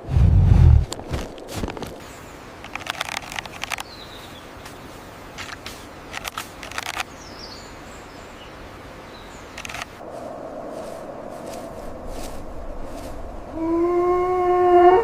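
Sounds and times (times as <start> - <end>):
sharp crackling rustles: 0.6 - 7.4, 9.3 - 13.8.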